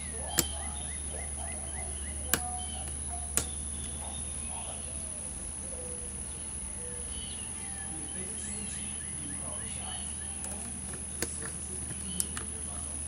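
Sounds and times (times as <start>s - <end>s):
padlock clicks: 0.0s - 1.0s, 2.1s - 4.0s, 10.3s - 12.6s
faint bird chirping: 0.0s - 13.0s.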